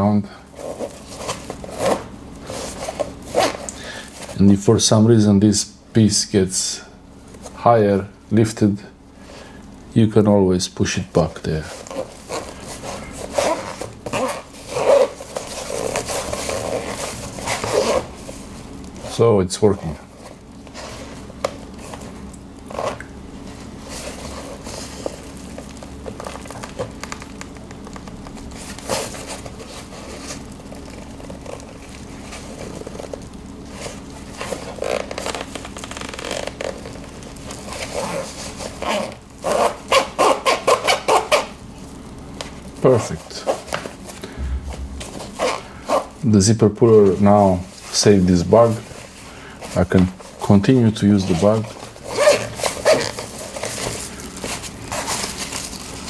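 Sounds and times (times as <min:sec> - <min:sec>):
zipper being run: 0:00.6 - 0:03.6, 0:11.9 - 0:18.1.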